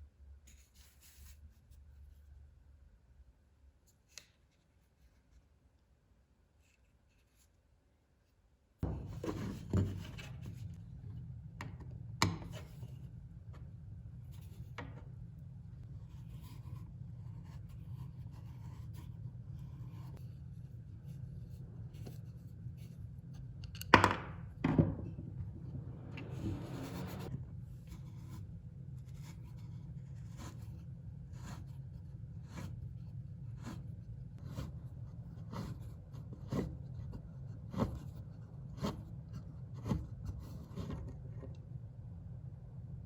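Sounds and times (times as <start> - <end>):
steady low hum: 8.8 - 43.0
knocks and clicks on workbench: 23.8 - 25.3.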